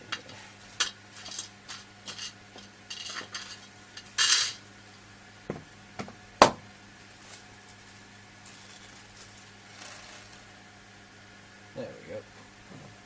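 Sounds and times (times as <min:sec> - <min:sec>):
small metal screws clinking: 0:00.8 - 0:04.6
scraping rustle: 0:07.1 - 0:10.5.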